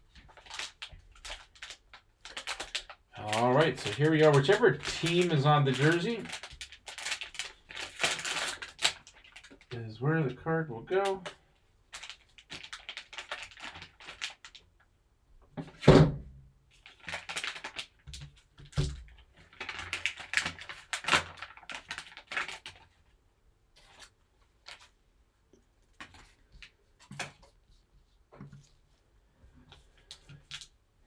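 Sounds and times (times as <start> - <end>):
packaging rustling and tearing: 0.1 - 9.8, 11.0 - 14.6, 16.8 - 23.0, 23.8 - 25.0
thump: 15.9 - 16.3.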